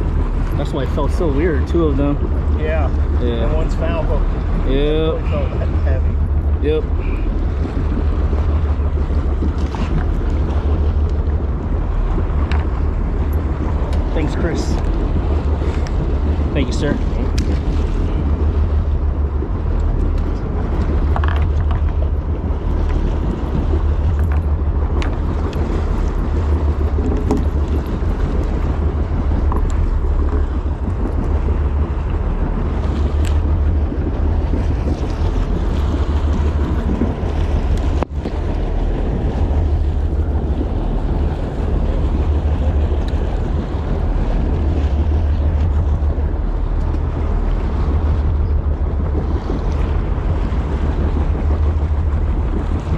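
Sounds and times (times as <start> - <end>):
water noise: 0.0 - 52.9
wind buffeting microphone: 0.0 - 52.9.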